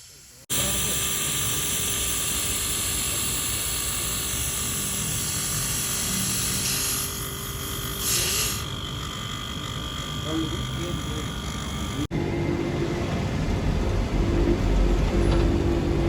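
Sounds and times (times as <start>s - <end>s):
refrigerant gas hissing: 0.0s - 12.1s.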